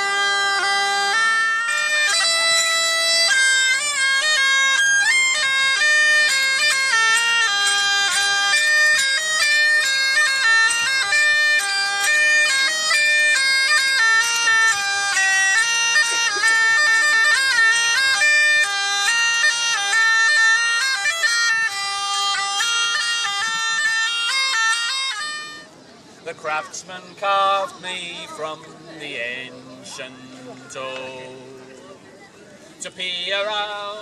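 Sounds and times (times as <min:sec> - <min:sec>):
bagpipe chanter melody: 0:00.0 - 0:31.7
bagpipe drones: 0:00.0 - 0:31.7.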